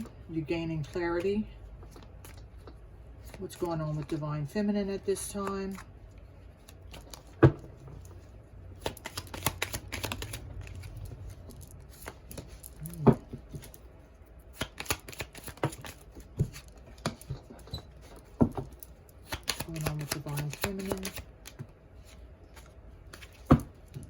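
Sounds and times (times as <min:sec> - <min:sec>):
cards being shuffled: 0:05.2 - 0:24.0.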